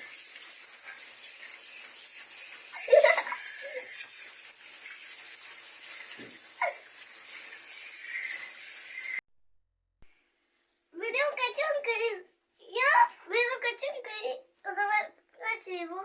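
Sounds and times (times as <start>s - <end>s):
running water hiss: 0.0s - 9.2s.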